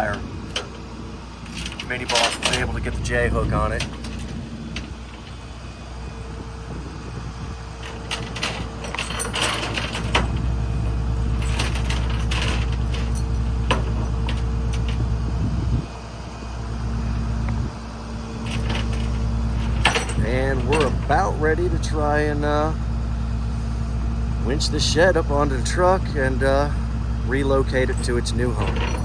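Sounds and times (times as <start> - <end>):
chain and hooks clanking: 0.0 - 5.7, 7.8 - 15.2, 18.4 - 22.0, 27.2 - 29.0
tow truck engine running: 0.0 - 29.0.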